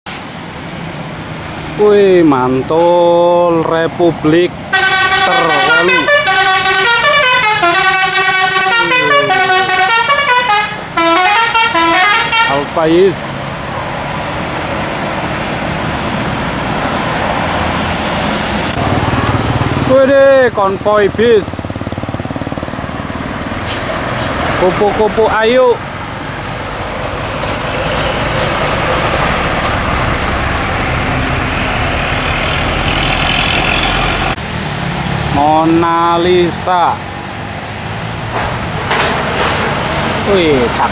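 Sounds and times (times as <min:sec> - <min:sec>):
diesel engine rumble: 0:00.1 - 0:40.9
tyre and road noise: 0:00.1 - 0:40.9
musical air horn tune: 0:04.7 - 0:12.7.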